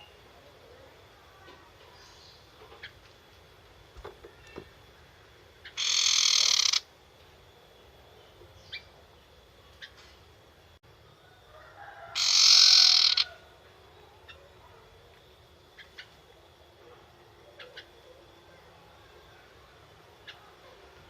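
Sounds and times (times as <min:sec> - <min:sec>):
faint bird chirps: 0:00.0 - 0:03.0, 0:04.3 - 0:06.9, 0:07.6 - 0:10.1, 0:11.9 - 0:14.9, 0:15.6 - 0:21.0.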